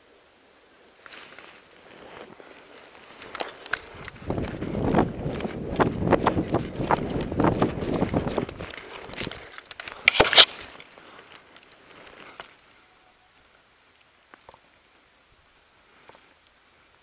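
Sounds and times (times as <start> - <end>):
rustling of brush: 0.7 - 17.0
footsteps on brushy ground: 1.0 - 12.7
faint clicks: 3.0 - 12.8, 13.4 - 17.0.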